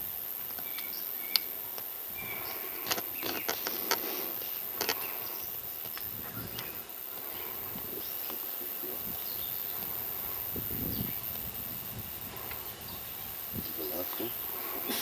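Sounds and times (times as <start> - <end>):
high insect hiss: 0.0 - 15.0
sharp clicks: 0.4 - 1.9, 2.8 - 9.9.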